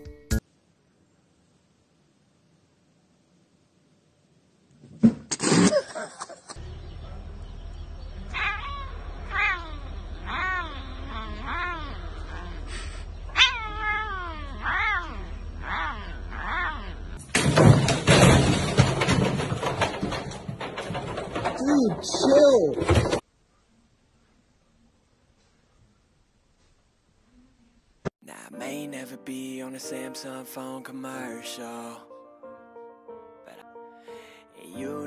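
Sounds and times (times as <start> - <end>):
cat meowing: 8.2 - 17.2
loud knocks: 17.2 - 23.2.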